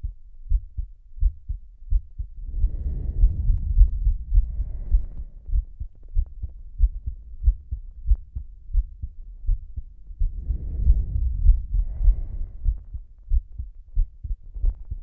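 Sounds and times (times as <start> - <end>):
slow heartbeat thumps: 0.0 - 15.0
heavy breathing: 10.2 - 13.1.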